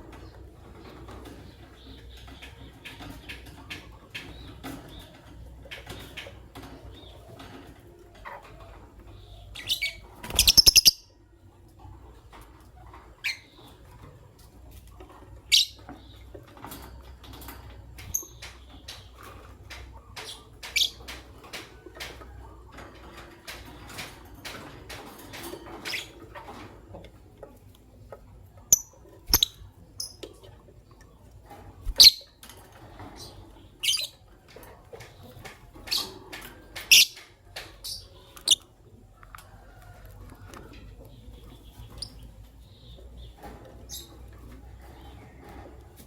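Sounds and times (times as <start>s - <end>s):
lovebirds chirping: 9.1s - 11.2s, 28.6s - 30.4s, 31.8s - 32.4s, 41.0s - 45.4s.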